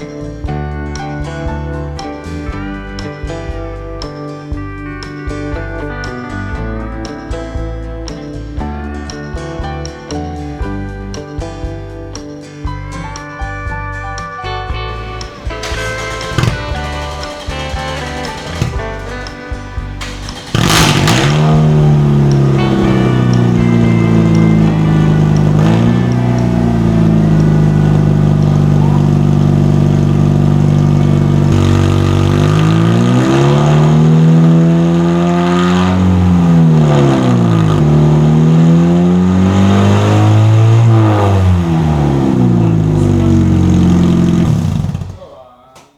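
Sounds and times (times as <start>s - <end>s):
car engine revving: 14.9s - 45.3s.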